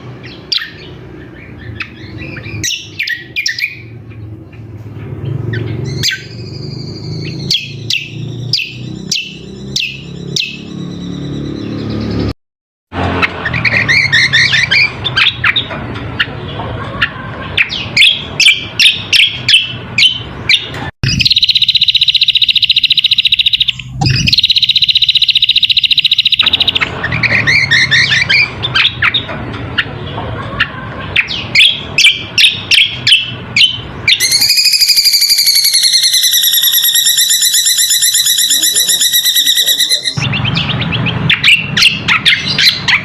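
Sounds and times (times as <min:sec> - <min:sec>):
bird chirping rapidly: 0:00.0 - 0:12.4, 0:13.1 - 0:16.4, 0:17.5 - 0:30.0, 0:30.6 - 0:43.0
bird buzzy trills: 0:05.2 - 0:12.4, 0:17.6 - 0:29.9, 0:31.2 - 0:43.0
high wavering bird call: 0:21.2 - 0:28.5, 0:31.6 - 0:40.3.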